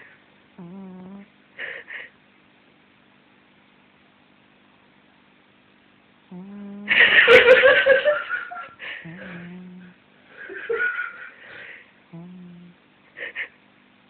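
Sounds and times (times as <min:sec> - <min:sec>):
cat snoring: 0:00.6 - 0:01.3, 0:06.3 - 0:06.9, 0:09.0 - 0:10.0, 0:12.1 - 0:12.8.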